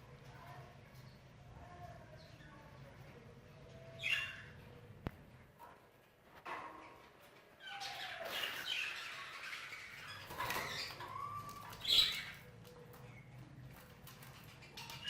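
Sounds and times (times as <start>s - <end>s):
budgerigars chirping and squawking: 7.6s - 13.3s.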